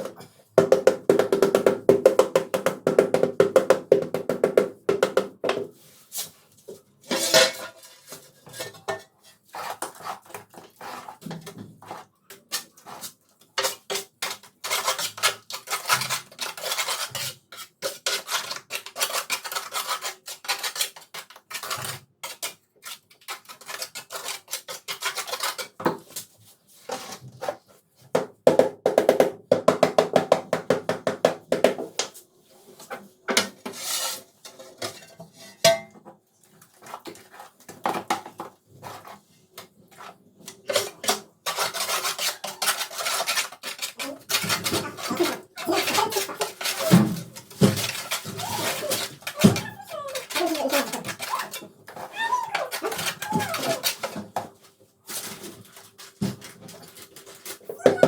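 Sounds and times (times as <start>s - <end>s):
trowel scraping on ceramic tiles: 7.0s - 27.7s, 32.5s - 35.6s, 38.4s - 58.0s.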